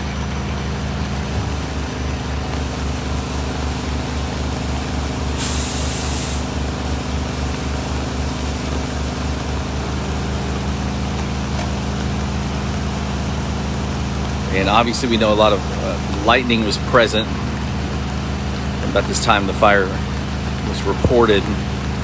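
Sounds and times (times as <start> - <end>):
diesel engine idling: 0.0 - 22.0
rain hissing: 0.0 - 22.0
sharp air hiss: 5.3 - 6.6.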